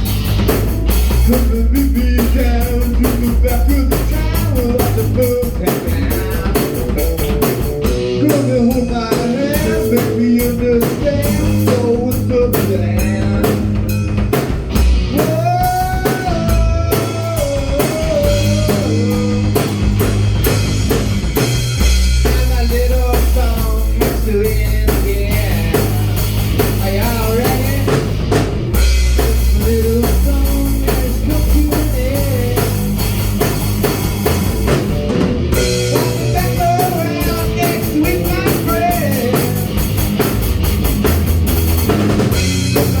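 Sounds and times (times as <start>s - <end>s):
rock music: 0.0s - 43.0s.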